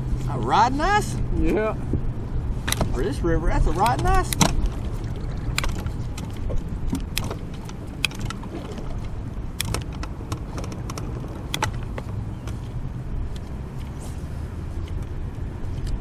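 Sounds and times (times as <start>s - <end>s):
boat motor rumble: 0.0s - 14.8s
tackle clicking and knocking: 3.8s - 12.8s.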